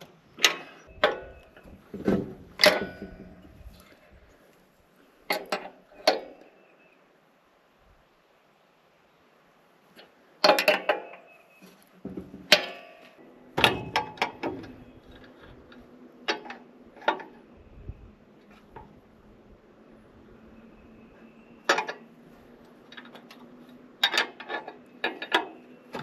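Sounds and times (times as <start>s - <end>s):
metal tools clanking on steel: 0.0s - 4.0s, 5.3s - 6.4s, 10.4s - 17.4s, 21.2s - 26.0s.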